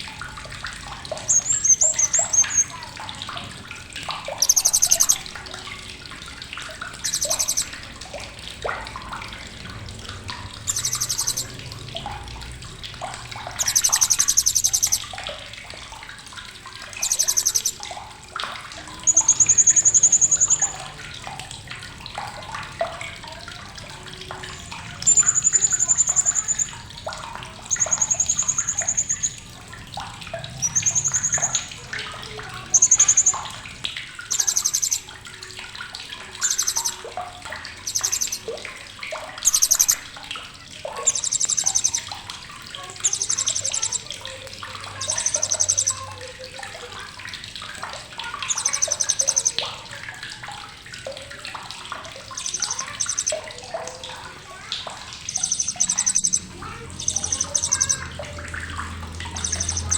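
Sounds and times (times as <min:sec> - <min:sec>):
parrot giving shrill calls: 0:04.4 - 0:05.3, 0:07.0 - 0:07.7, 0:13.6 - 0:15.1, 0:17.0 - 0:17.8, 0:34.3 - 0:35.1.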